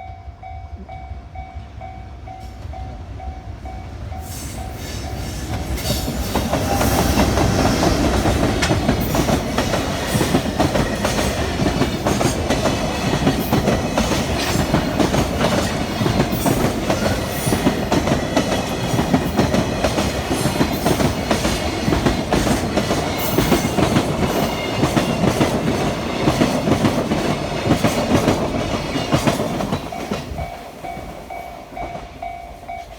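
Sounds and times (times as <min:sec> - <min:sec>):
train wheels clacking over rail joints: 0:05.4 - 0:31.3.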